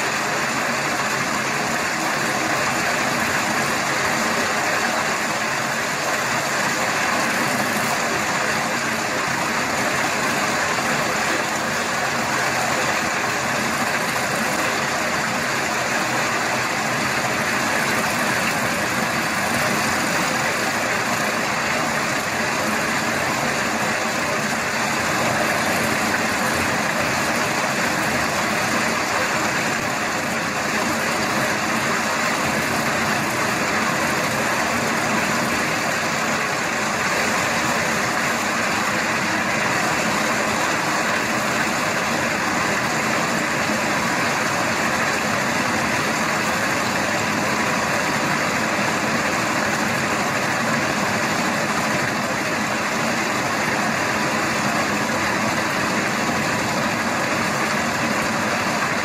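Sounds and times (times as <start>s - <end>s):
heavy machinery engine running: 0.0s - 59.0s.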